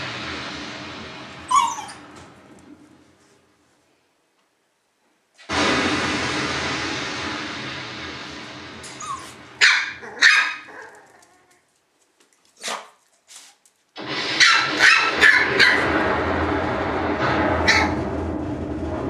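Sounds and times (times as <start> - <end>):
puppies barking and yipping: 1.5 - 2.0.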